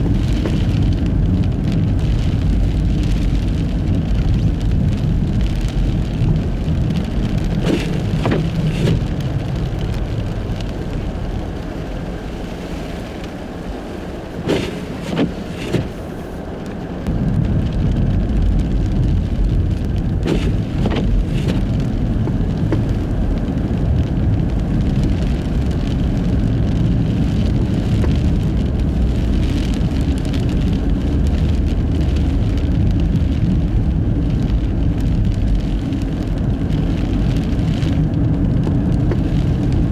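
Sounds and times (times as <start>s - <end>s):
tyres rumbling on snowy road: 0.0s - 39.9s
thumps: 7.6s - 9.1s, 14.4s - 16.0s.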